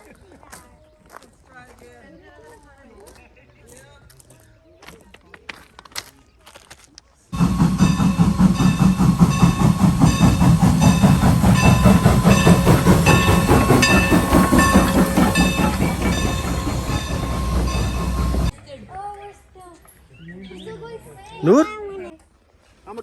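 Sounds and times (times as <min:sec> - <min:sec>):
train rumbling on rails: 0:07.4 - 0:18.6.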